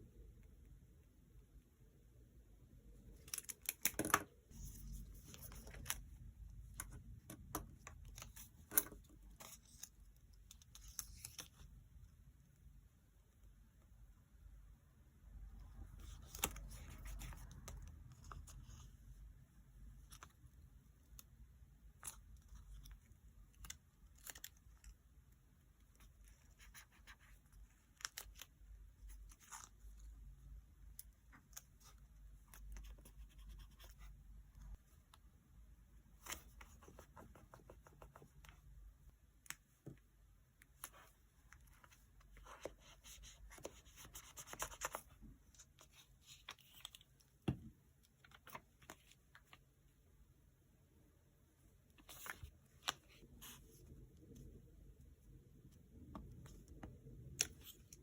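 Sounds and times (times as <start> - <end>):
paper and stickers rustling: 3.1 - 12.0, 15.9 - 19.2, 40.6 - 49.7.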